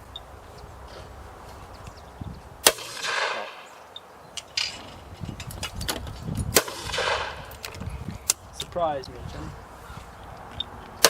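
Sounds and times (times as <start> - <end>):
shotgun shots with echo: 2.6 - 3.7, 6.6 - 7.5.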